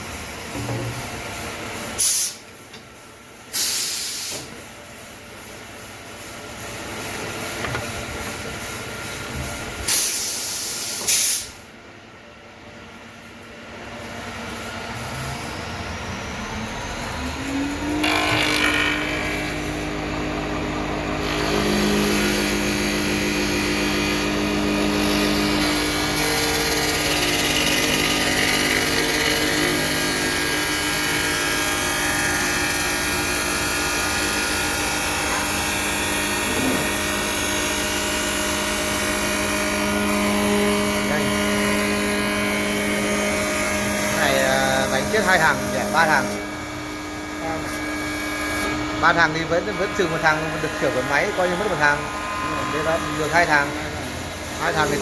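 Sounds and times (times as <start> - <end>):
hissing air blasts: 2.0 - 2.4, 3.5 - 4.6, 9.8 - 11.6
lathe motor whining: 13.8 - 55.0
lathe cutting wood: 14.4 - 55.0.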